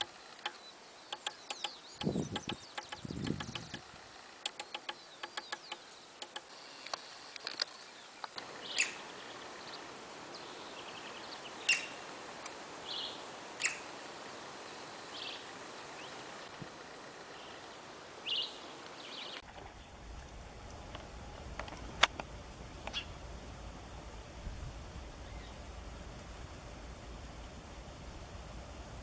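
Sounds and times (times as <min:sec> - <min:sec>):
sharp clicks and ticks: 0:00.0 - 0:03.8, 0:04.4 - 0:07.6, 0:20.7 - 0:23.0
birds chirping and trilling: 0:00.0 - 0:12.2, 0:12.8 - 0:16.6, 0:17.2 - 0:26.9
background hiss: 0:00.0 - 0:29.0.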